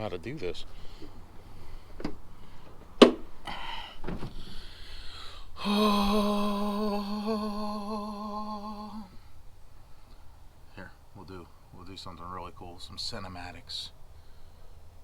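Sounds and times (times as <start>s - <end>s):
man humming a held note: 5.6s - 9.2s.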